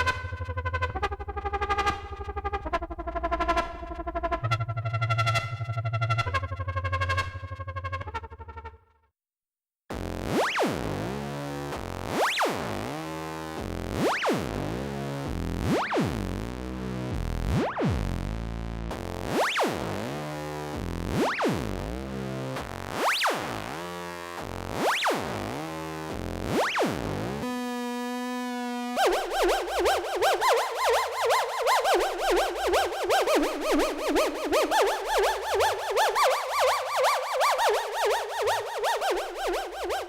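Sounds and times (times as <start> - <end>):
synthesizer chords with filter sweeps: 24.8 - 40.0.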